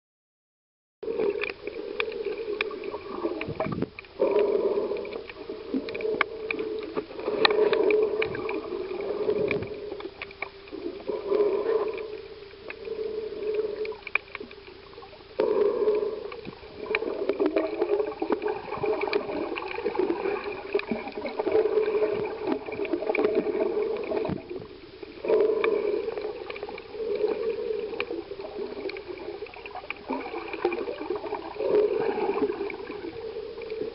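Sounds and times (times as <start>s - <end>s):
muffled water sloshing underwater: 1.0s - 33.9s.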